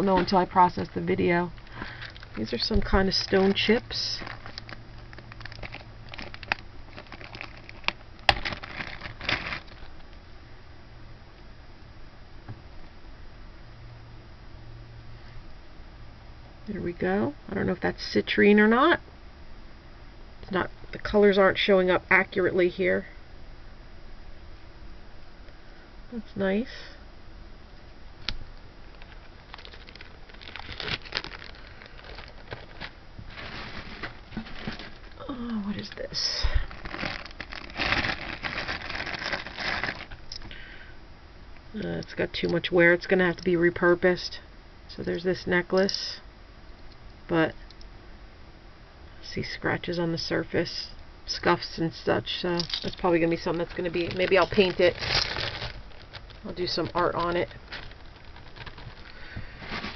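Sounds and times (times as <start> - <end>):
plastic bag crinkling: 0.0 - 10.2, 28.8 - 40.5, 52.6 - 59.9.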